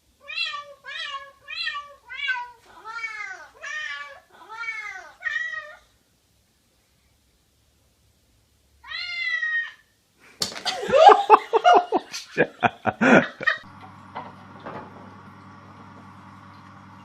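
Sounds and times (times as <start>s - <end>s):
cat meowing: 0.2s - 5.9s, 8.8s - 9.9s.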